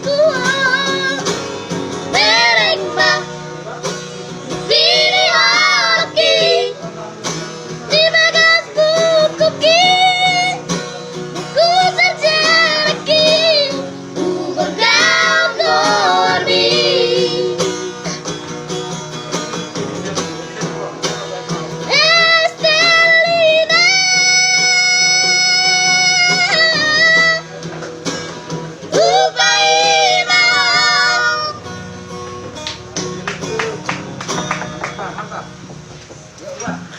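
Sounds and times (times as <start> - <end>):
instrumental backing music: 0.0 - 36.9
children singing: 2.1 - 3.3, 4.7 - 6.7, 12.1 - 17.7, 29.0 - 31.6.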